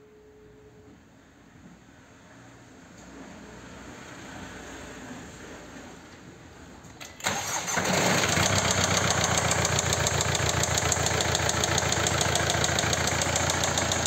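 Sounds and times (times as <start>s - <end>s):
car engine starting and idling: 7.0s - 14.0s.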